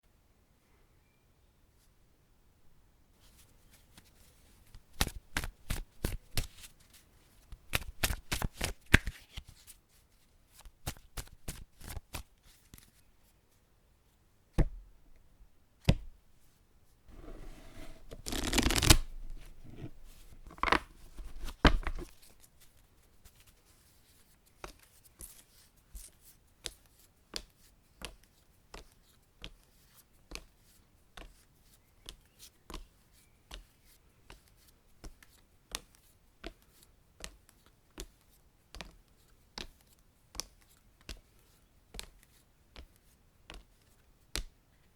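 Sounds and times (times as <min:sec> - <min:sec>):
playing cards shuffling: 0:07.6 - 0:09.6, 0:17.1 - 0:22.3
crisp card clicks: 0:17.8 - 0:22.1.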